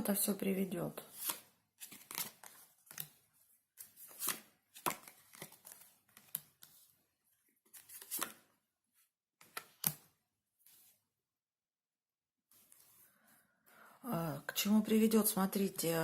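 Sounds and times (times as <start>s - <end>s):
cards swishing and tapping: 1.1s - 3.2s, 3.8s - 6.9s, 7.6s - 8.5s, 9.4s - 11.0s.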